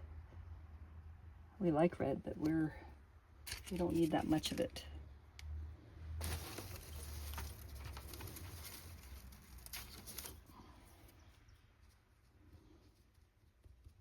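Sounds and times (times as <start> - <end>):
paper rustling and rubbing: 3.5 - 4.6, 6.2 - 10.6.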